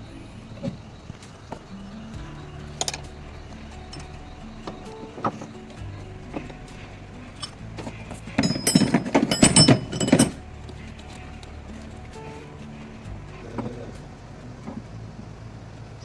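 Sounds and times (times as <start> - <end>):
metal tools clinking and rattling: 2.4 - 14.2.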